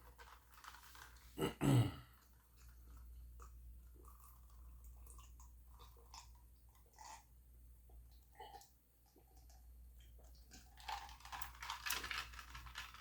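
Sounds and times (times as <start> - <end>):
person chewing food: 2.1 - 7.3.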